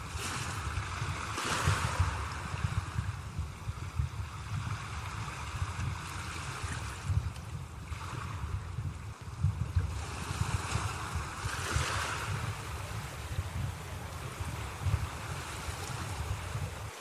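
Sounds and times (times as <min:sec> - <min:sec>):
sea waves washing on shore: 0:00.0 - 0:17.0
wind buffeting microphone: 0:00.0 - 0:17.0.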